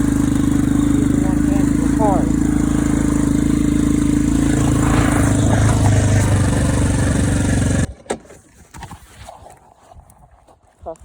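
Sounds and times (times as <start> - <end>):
atv engine running: 0.0 - 7.9.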